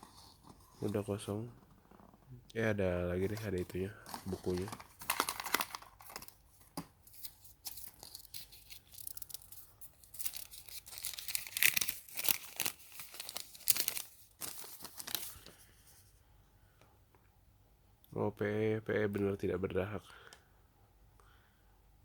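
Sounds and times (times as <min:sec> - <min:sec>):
paper crinkling and rustling: 0:03.2 - 0:15.7.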